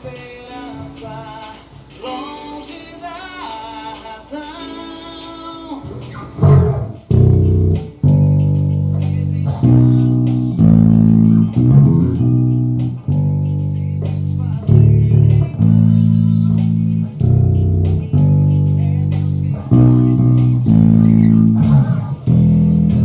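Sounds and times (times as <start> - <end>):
person singing: 0.0 - 8.1, 8.8 - 23.0
electric bass low notes: 6.1 - 23.0.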